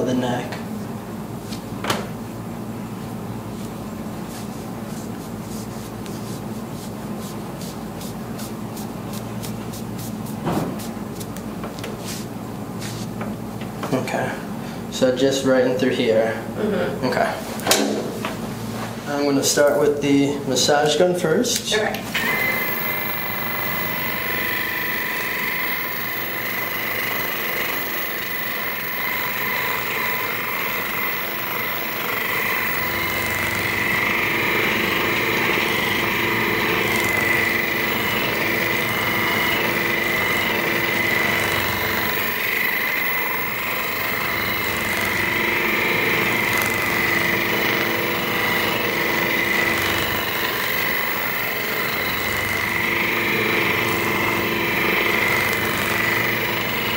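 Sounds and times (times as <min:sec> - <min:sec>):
massage gun motor buzzing: 0:22.2 - 0:56.9.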